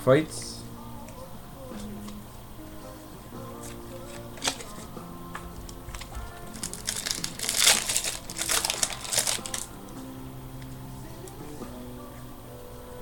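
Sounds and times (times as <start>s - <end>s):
background music: 0.0s - 13.0s
wrapper crinkling: 3.6s - 4.9s, 5.6s - 9.8s.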